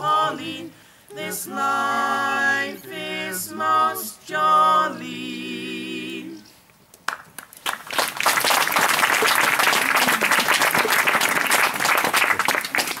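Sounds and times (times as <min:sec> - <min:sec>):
audience clapping: 0:07.0 - 0:13.0.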